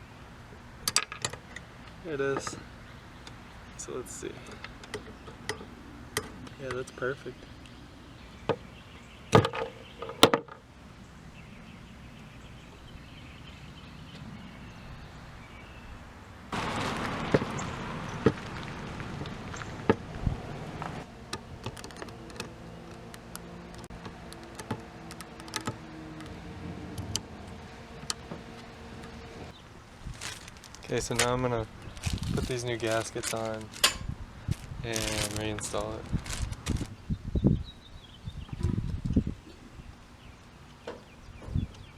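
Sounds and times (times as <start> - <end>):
rustling: 27.4 - 37.0.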